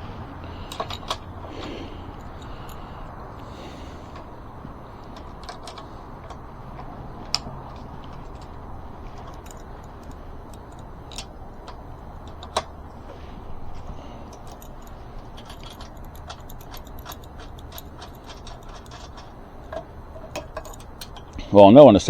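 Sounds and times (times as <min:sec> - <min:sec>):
metallic clinks of tools: 0:00.0 - 0:21.5
low background hum: 0:00.0 - 0:22.0.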